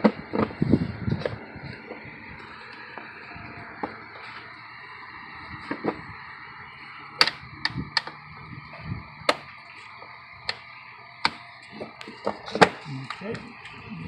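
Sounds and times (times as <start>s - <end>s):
parts clicking and knocking: 7.2s - 8.2s, 9.3s - 9.5s.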